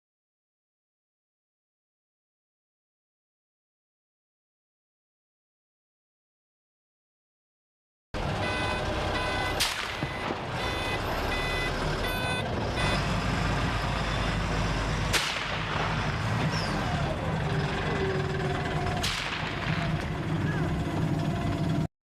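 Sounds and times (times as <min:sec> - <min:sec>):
vehicle engine running: 0:08.2 - 0:21.9
short electronic beeps: 0:08.4 - 0:14.4
gunshot cracks: 0:09.6 - 0:10.1, 0:15.1 - 0:16.0, 0:19.0 - 0:20.1.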